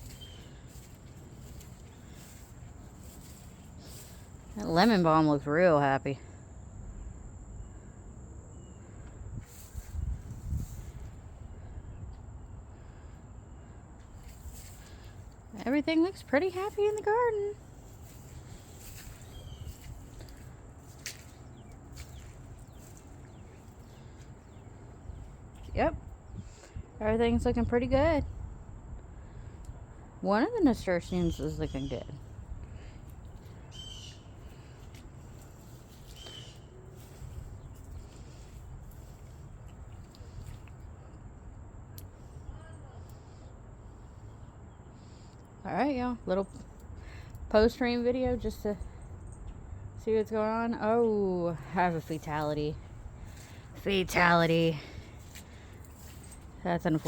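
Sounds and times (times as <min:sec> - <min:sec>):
bird chirping: 0:00.0 - 0:04.1, 0:33.4 - 0:34.7, 0:35.3 - 0:38.0
footsteps on wet ground: 0:00.0 - 0:04.7, 0:16.7 - 0:24.4, 0:34.3 - 0:40.8, 0:52.0 - 0:57.0
faint low outdoor rumble: 0:00.0 - 0:57.0
foliage rustling: 0:16.7 - 0:25.0
cricket trilling: 0:31.0 - 0:40.5.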